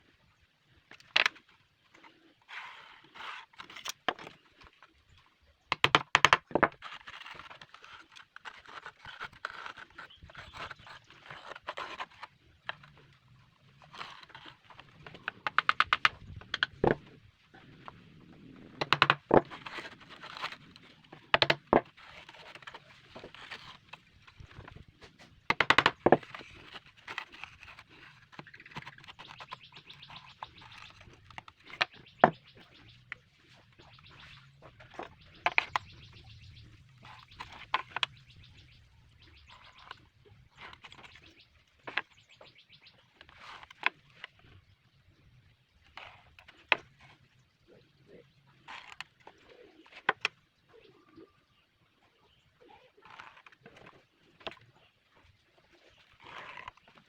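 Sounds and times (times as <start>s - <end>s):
tools tapping and knocking: 25.5s - 26.2s.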